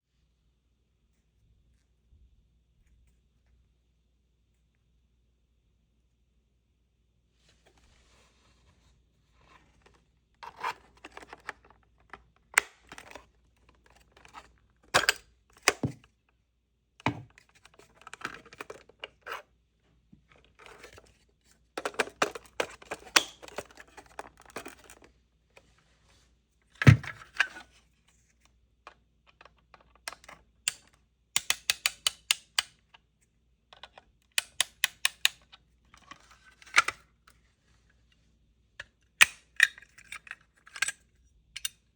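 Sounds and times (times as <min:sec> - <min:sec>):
tool clicks and rattles: 0:21.8 - 0:25.1.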